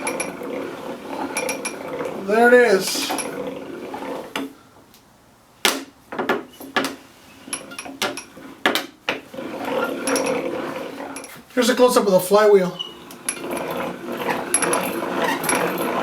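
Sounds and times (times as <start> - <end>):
hand-cranked drill clicks and knocks: 5.6 - 10.5, 13.0 - 16.0.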